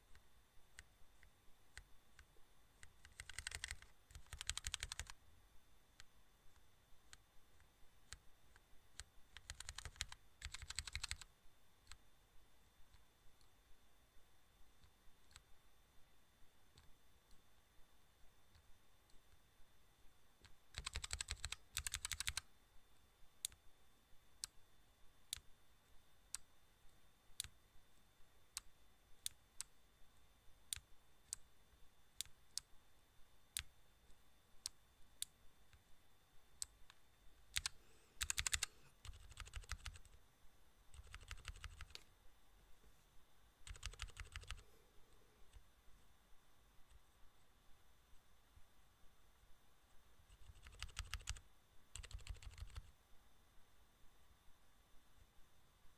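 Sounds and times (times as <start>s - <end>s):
faint clicking: 26.3s - 27.6s, 49.9s - 52.9s.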